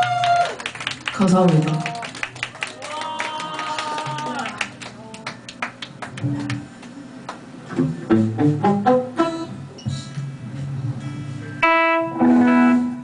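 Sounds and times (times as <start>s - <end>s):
low held guitar notes: 7.6s - 13.0s
guitar notes plucked: 7.7s - 13.0s.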